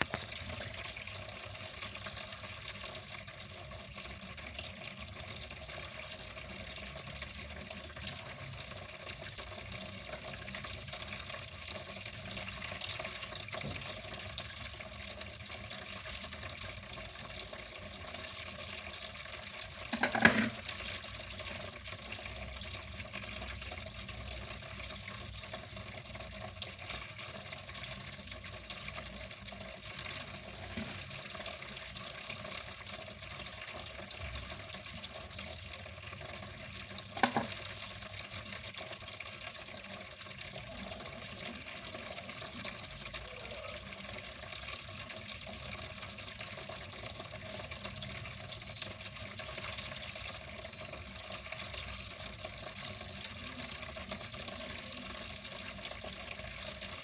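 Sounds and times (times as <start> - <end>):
water flowing: 8.6 - 47.4.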